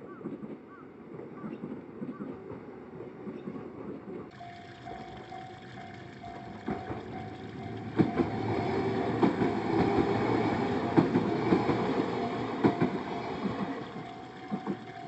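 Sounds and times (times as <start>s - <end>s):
train wheels clacking: 1.4s - 15.0s
crossing warning bell ringing: 4.3s - 15.0s.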